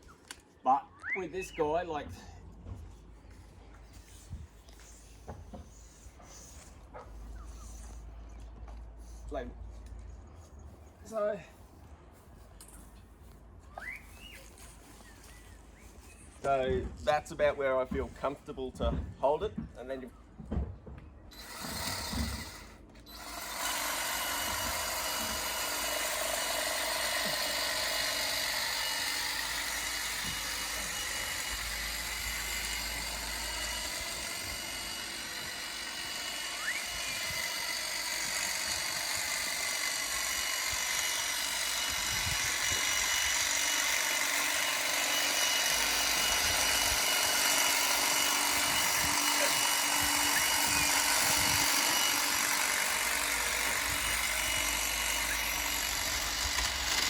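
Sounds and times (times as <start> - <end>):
hedge trimmer running: 21.3 - 57.0.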